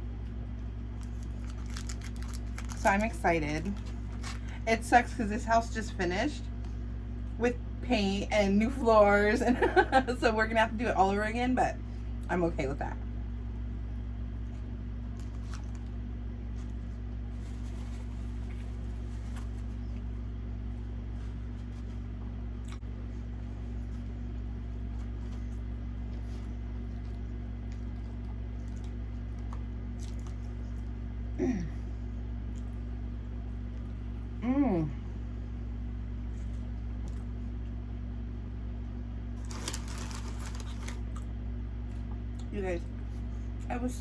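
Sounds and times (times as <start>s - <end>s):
steady low hum: 0.0s - 44.0s
wet chewing: 24.8s - 31.0s.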